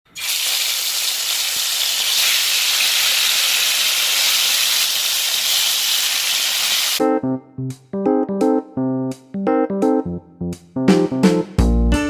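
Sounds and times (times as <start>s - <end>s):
fish sizzling in hot oil: 0.1s - 7.0s.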